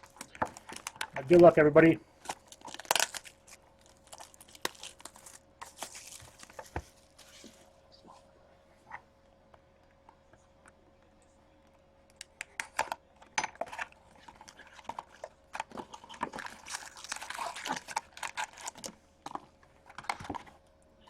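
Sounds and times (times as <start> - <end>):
cardboard and plastic crinkling: 0.0 - 1.2, 2.2 - 7.6, 13.6 - 20.5.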